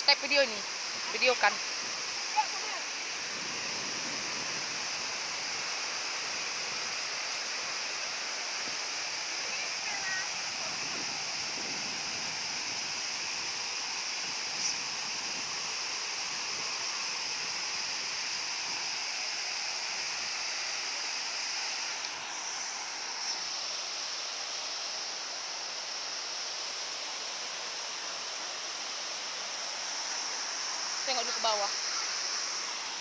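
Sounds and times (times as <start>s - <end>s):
waterfall rushing: 0.0s - 33.0s.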